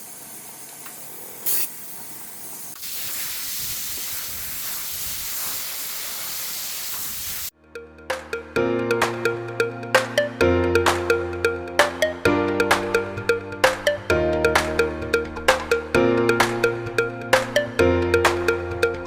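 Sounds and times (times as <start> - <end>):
pressurised gas hissing: 1.4 - 2.0, 2.7 - 7.5.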